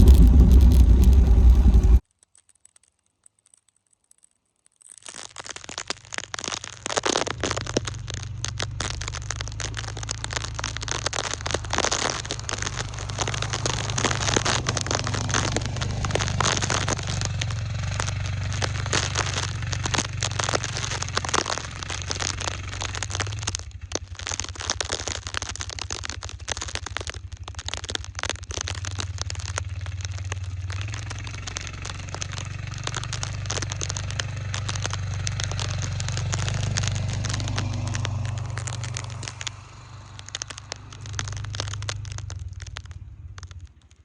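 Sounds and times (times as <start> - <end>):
engine running steadily: 0.0 - 2.0
crackling and scraping noise: 0.0 - 44.0.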